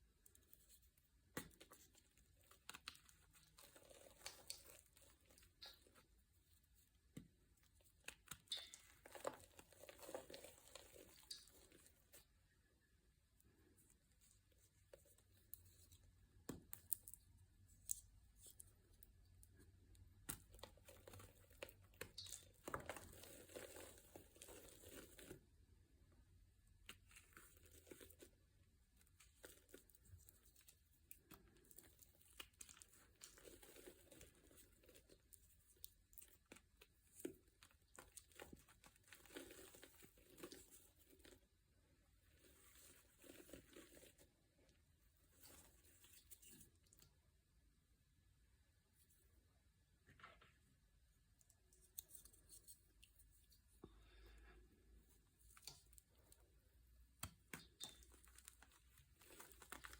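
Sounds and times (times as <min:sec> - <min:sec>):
material crinkling and crackling: 0:00.2 - 0:12.6, 0:20.3 - 0:25.6, 0:26.7 - 0:47.1, 0:51.4 - 0:59.9.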